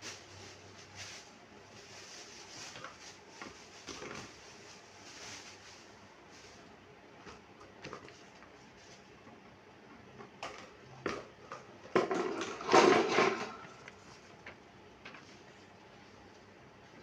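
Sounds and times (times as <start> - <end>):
knocking and rustling scrapes: 0.1 - 5.9, 11.9 - 14.4.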